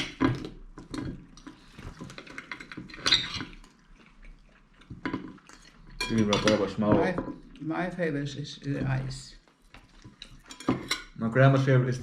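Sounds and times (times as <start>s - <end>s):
wet chewing and smacking: 0.0s - 6.0s, 8.8s - 10.8s.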